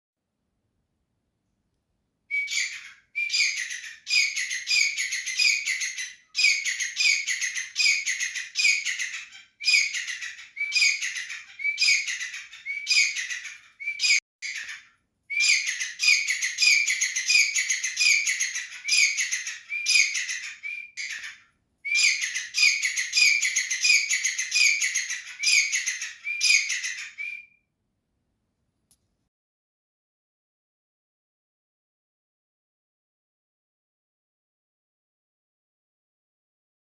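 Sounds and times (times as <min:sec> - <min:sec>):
bird shrill repeated call: 0:02.4 - 0:27.5.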